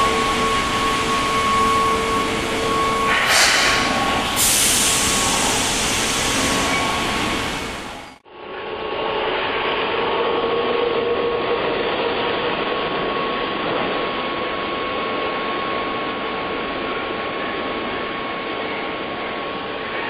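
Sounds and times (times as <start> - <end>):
mechanical hum and hiss: 0.0 - 8.2.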